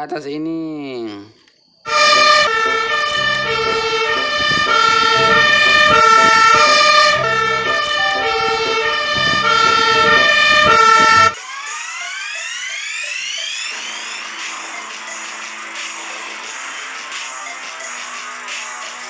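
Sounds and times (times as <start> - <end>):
rising electronic sweep: 1.9 - 11.9
toy siren alternating buzzy tone: 1.9 - 14.9.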